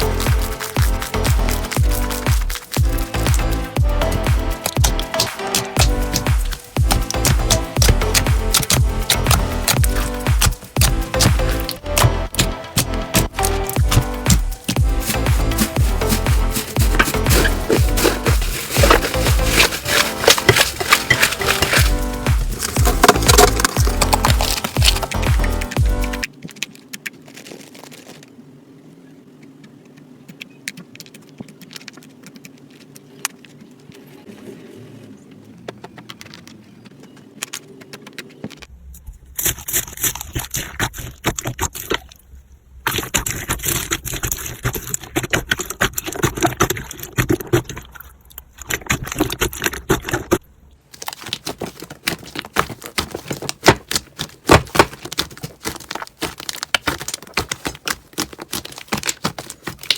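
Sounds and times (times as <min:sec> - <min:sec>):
low hum: 0:00.0 - 0:26.3
slime crackling and clicking: 0:00.0 - 0:28.2, 0:51.0 - 0:59.9.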